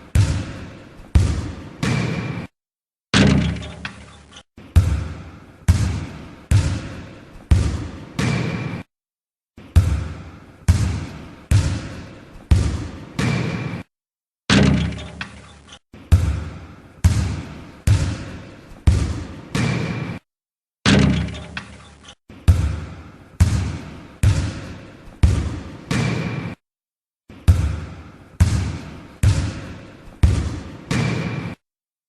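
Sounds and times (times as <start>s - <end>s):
basketball bouncing on hard floor: 1.1s - 2.3s, 10.7s - 13.7s, 18.8s - 20.0s, 30.2s - 31.4s.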